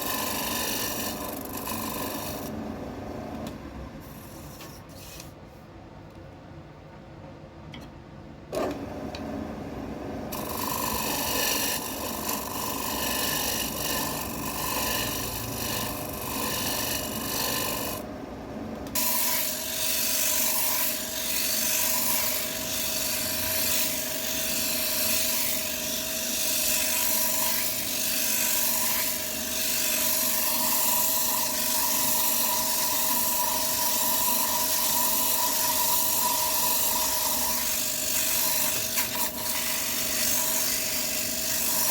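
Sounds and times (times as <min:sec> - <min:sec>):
tool scraping spinning wood: 0:00.0 - 0:02.6, 0:10.3 - 0:18.0, 0:19.0 - 0:41.9
wood lathe motor hum: 0:00.0 - 0:02.6, 0:10.3 - 0:18.1, 0:18.9 - 0:41.9.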